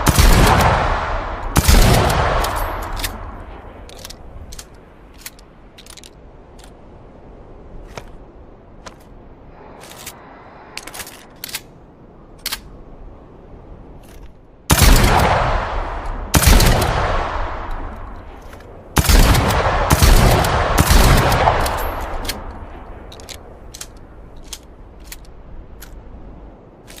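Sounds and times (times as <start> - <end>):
shotgun blasts: 0.0 - 3.4, 14.7 - 17.6, 19.0 - 22.2
small sharp clicks: 21.4 - 26.1.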